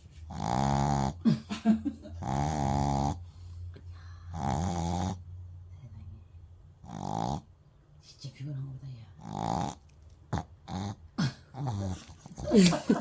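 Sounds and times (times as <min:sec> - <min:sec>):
dog snoring: 0:00.3 - 0:01.2, 0:02.2 - 0:03.4, 0:04.3 - 0:05.3, 0:06.8 - 0:07.5, 0:09.2 - 0:12.5.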